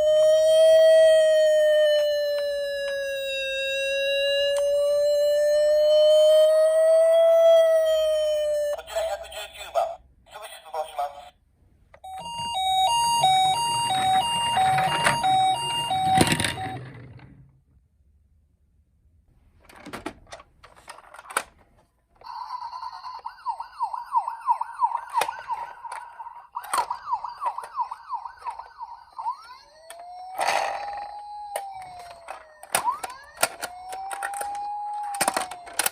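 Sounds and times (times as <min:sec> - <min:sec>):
emergency vehicle siren: 0:00.0 - 0:08.8, 0:12.0 - 0:16.9, 0:22.2 - 0:35.9
toy car clicks and knocks: 0:29.3 - 0:35.9.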